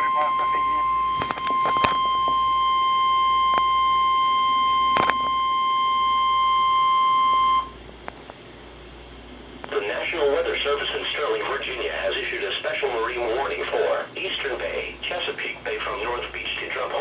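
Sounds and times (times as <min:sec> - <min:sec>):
high warning alarm tone: 0:00.0 - 0:07.8
static clicks: 0:01.2 - 0:02.6, 0:04.9 - 0:05.4.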